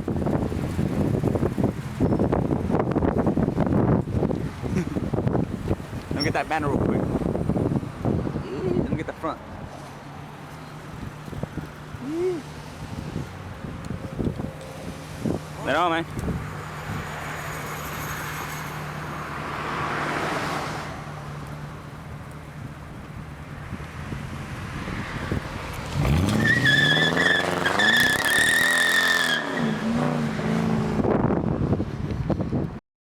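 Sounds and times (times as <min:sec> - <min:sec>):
car engine idling and revving: 0:00.0 - 0:32.8
high squeal: 0:26.3 - 0:29.9.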